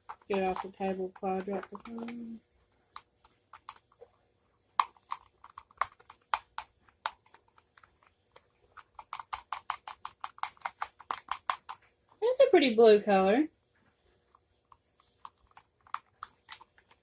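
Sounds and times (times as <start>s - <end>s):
utensil clicking against bowl: 0.0s - 2.4s.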